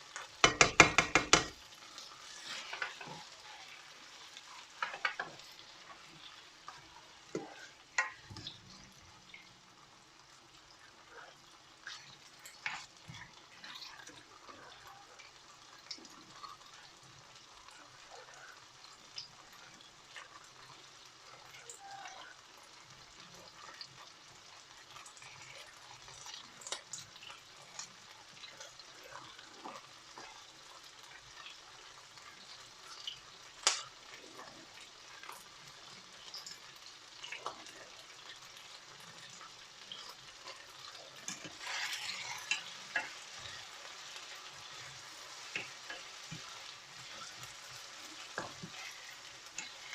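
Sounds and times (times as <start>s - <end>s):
peppers sizzling in oil: 0.0s - 49.9s
utensil scraping a pan: 2.2s - 3.7s, 41.2s - 43.7s, 45.0s - 49.9s.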